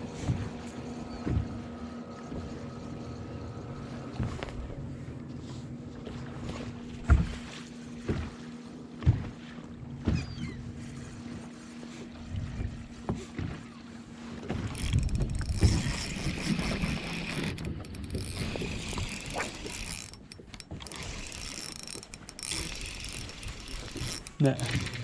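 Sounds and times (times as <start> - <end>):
water slapping boat hull: 0.0 - 25.0
fishing reel whirring: 14.6 - 25.0.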